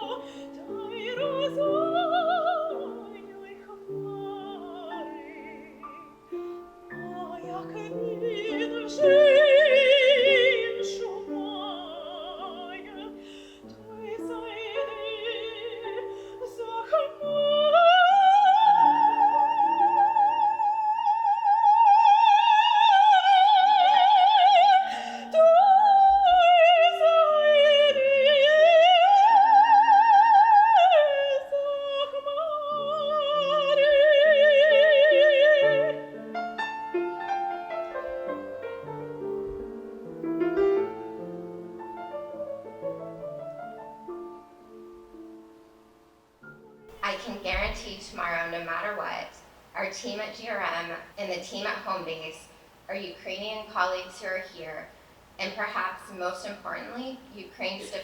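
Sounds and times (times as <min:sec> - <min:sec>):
piano accompaniment: 0:00.0 - 0:30.8, 0:32.4 - 0:49.1
operatic soprano singing: 0:00.0 - 0:36.3.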